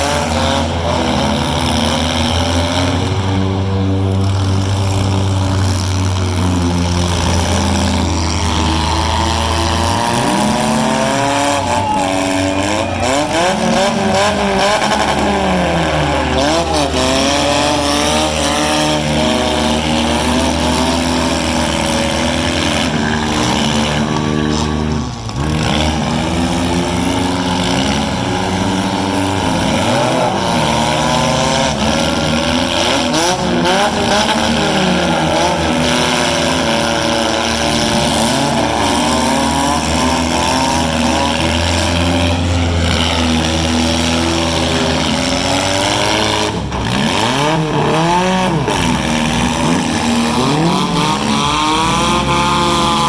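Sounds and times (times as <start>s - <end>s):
car engines revving: 0.0s - 53.0s.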